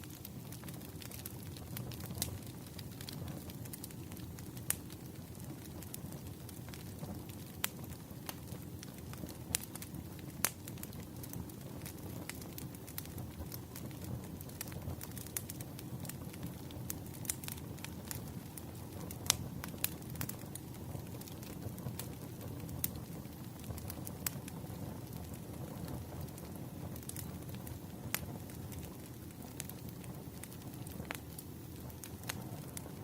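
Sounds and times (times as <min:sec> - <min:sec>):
sharp pops of burning logs: 0:00.0 - 0:33.0
wood fire crackling: 0:00.0 - 0:33.0.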